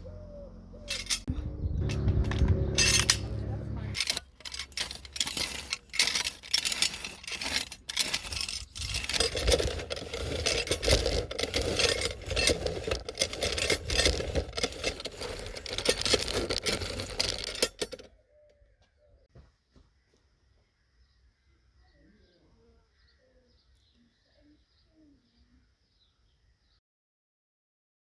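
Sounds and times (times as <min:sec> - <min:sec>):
tiller scraping through soil: 0:00.8 - 0:01.3, 0:01.9 - 0:03.4, 0:04.0 - 0:18.1.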